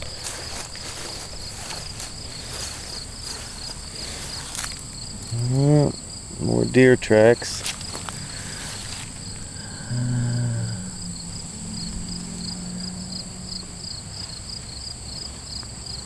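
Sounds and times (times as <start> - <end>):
insects chirping: 0.0 - 16.0
low hum: 7.9 - 14.8.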